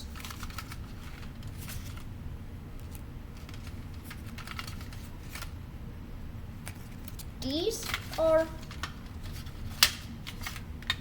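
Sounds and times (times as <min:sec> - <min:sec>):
cards clicking and flicking: 0:06.6 - 0:11.0.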